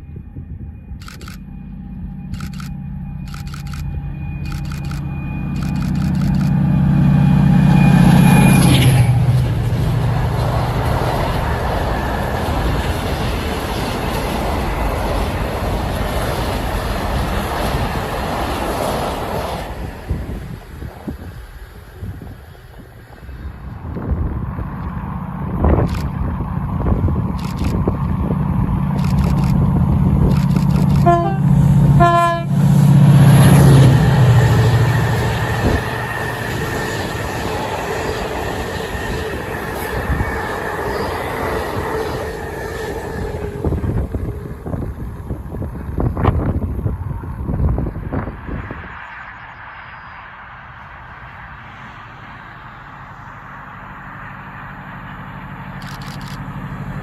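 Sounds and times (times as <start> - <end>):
train wheel noise: 0.0 - 49.0
diesel locomotive engine drone: 0.0 - 57.0
locomotive horn blasts: 31.0 - 32.8.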